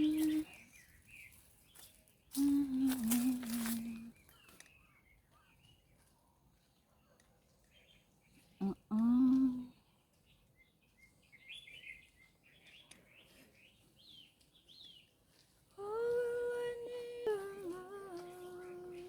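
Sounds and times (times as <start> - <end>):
person humming: 0.0 - 0.5, 2.4 - 4.1, 8.6 - 9.7, 15.8 - 19.0
faint bird chirping: 0.0 - 19.0.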